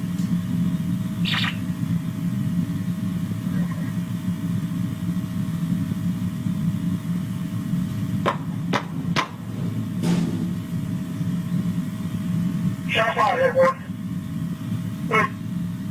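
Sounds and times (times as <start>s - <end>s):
faint constant whine: 0.0s - 15.9s
vehicle engine rumble: 2.0s - 12.9s.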